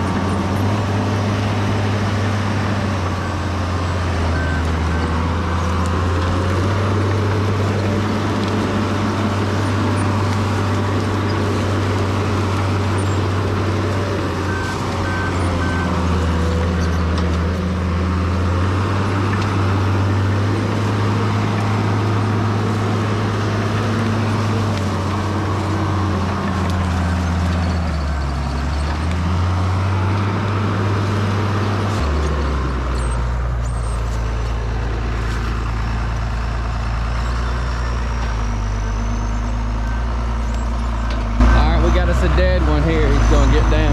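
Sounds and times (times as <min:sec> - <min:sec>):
bulldozer diesel engine: 0:00.0 - 0:43.9
backup alarm beeping: 0:14.5 - 0:16.0.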